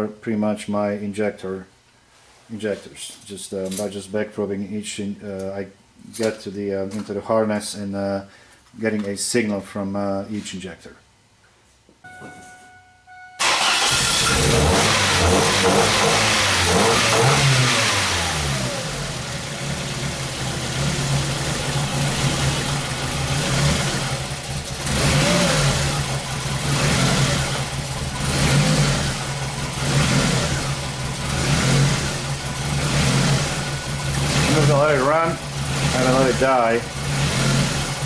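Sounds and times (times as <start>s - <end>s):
car engine starting and idling roughly: 13.4s - 38.0s.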